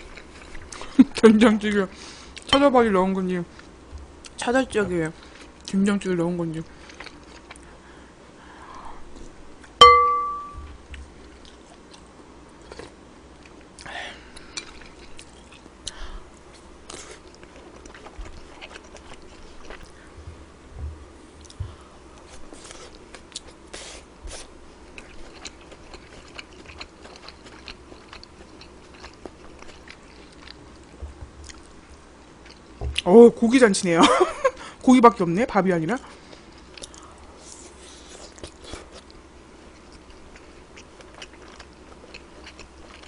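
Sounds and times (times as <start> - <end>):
chewing: 0.0 - 1.0, 6.7 - 7.7, 11.2 - 20.0, 22.2 - 32.7, 36.1 - 43.0
utensil clinking on dish: 9.8 - 10.6.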